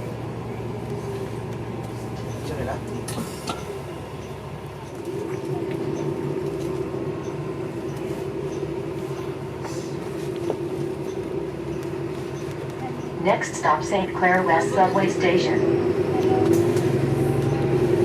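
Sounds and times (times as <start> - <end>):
bus drivetrain hum: 0.0 - 18.0
steady whine: 4.9 - 18.0.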